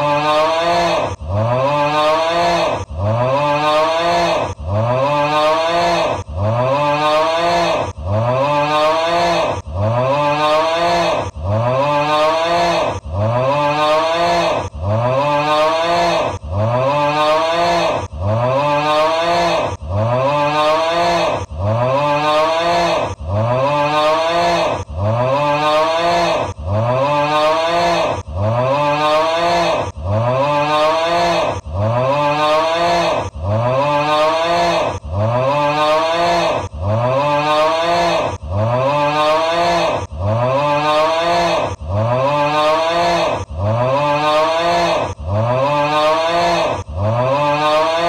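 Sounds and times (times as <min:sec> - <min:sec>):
exaggerated snore rising in pitch: 0:00.0 - 0:48.0.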